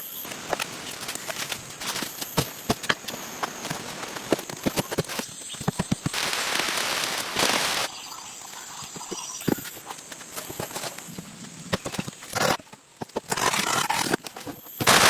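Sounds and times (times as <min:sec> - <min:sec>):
rushing hiss: 0:06.0 - 0:09.7.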